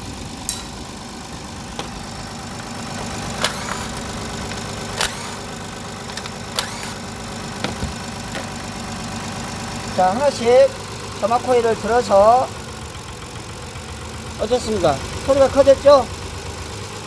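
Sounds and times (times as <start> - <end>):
car engine idling with tapping knock: 0.0 - 17.0
sharp clicks: 3.0 - 4.2, 4.9 - 7.0.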